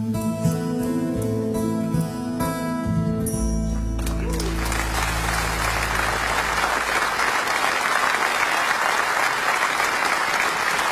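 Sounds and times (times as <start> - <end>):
low final chord: 3.4 - 7.6
audience applauding: 4.0 - 10.9.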